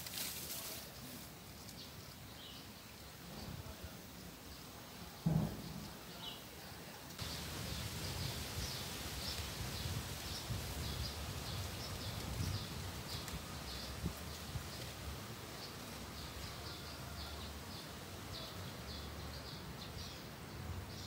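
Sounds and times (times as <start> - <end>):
outdoor background noise: 0.0 - 21.0
low thump: 5.2 - 5.8.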